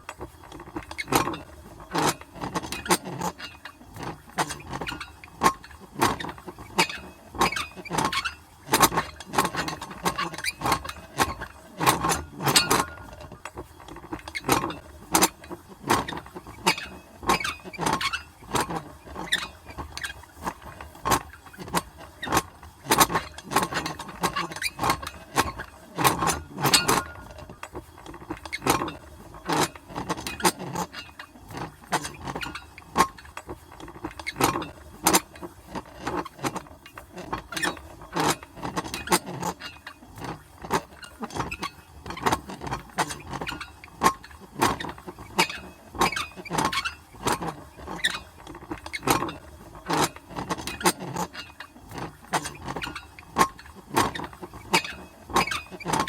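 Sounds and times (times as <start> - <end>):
metal crank handwheel clanking: 0.8 - 13.3, 14.0 - 35.4.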